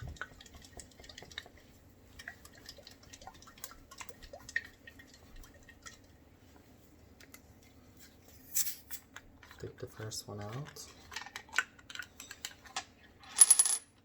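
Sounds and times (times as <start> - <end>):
liquid sloshing: 0.0 - 7.0.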